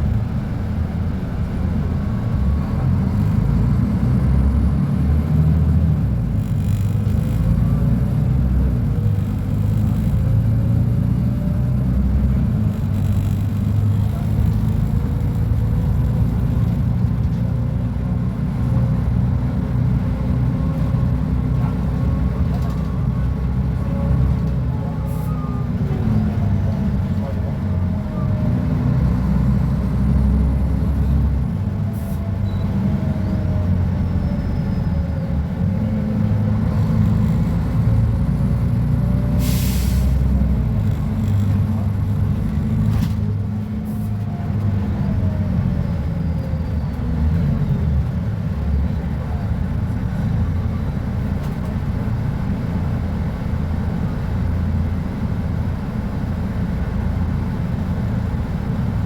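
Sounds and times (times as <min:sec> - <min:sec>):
bus diesel engine rumbling: 0:00.0 - 0:59.0
air brake hiss: 0:39.4 - 0:40.2.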